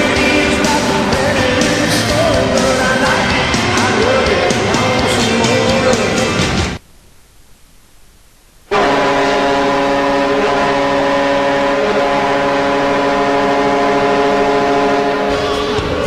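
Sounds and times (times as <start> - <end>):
rock music with electric guitar: 0.0 - 6.8, 12.2 - 16.0
goal horn blast: 8.7 - 16.0.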